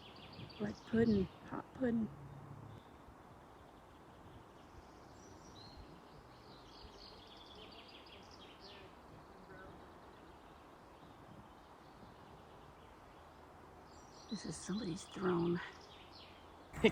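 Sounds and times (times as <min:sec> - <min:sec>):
faint outdoor air: 0:00.0 - 0:16.9
small bird chirping: 0:00.0 - 0:16.9.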